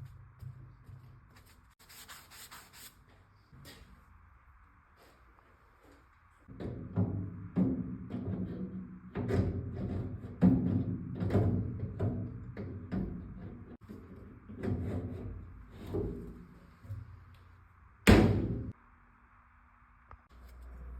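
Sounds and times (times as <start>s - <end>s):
knocks and thuds against a cabinet: 18.1s - 18.7s.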